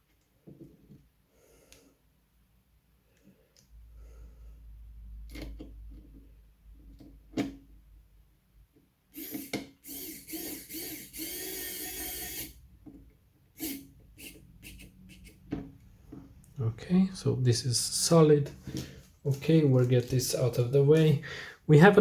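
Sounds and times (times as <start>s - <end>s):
electric screwdriver whirring: 9.2s - 12.6s, 13.6s - 15.4s.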